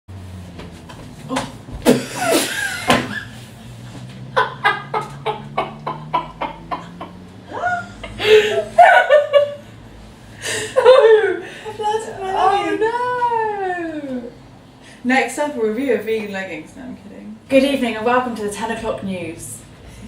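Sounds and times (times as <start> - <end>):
person laughing: 1.8 - 3.4, 4.3 - 9.6
giggling and voices: 4.9 - 9.0.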